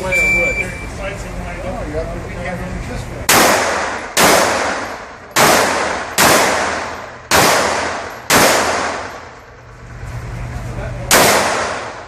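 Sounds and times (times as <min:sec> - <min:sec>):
pistol shots with echo: 0:03.3 - 0:09.4, 0:11.1 - 0:12.0.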